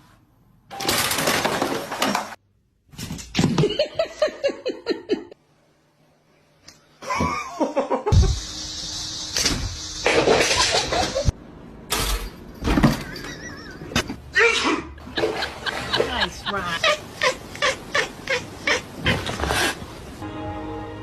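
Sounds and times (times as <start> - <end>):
person laughing: 3.6 - 5.4, 7.0 - 8.4, 13.0 - 17.4
music: 20.2 - 21.0.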